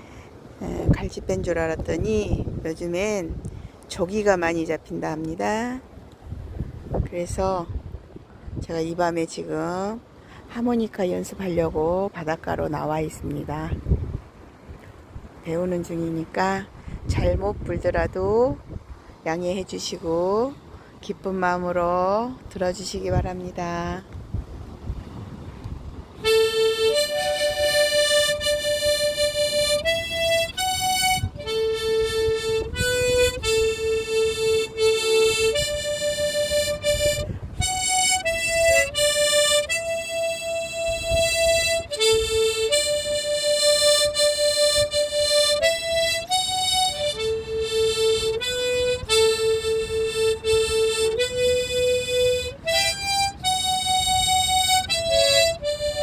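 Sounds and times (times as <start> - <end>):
harmonica played slowly: 26.2 - 56.0.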